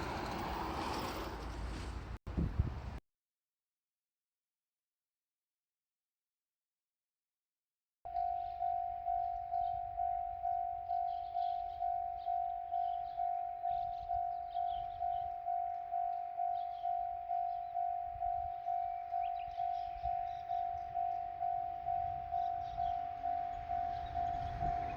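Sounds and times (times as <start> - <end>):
level crossing warning bell: 8.1 - 24.9.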